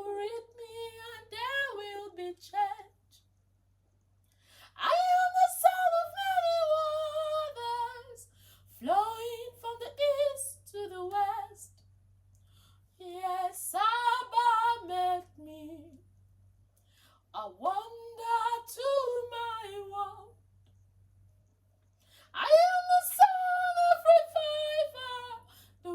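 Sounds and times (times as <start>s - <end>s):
woman singing unaccompanied: 0.0s - 3.0s, 4.7s - 11.8s, 13.0s - 16.0s, 17.4s - 20.4s, 22.3s - 25.9s
faint low hum: 0.0s - 25.9s.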